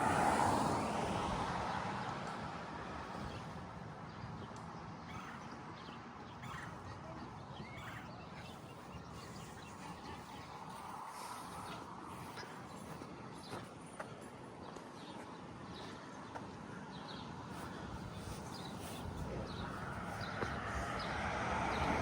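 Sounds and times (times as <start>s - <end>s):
vehicle passing: 0.0s - 3.6s, 18.0s - 22.0s
faint bird calls: 5.0s - 13.6s.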